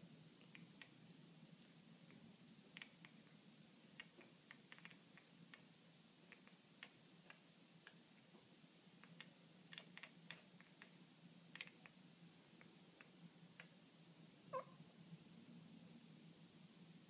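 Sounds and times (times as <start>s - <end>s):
cat chirp: 14.5s - 14.8s.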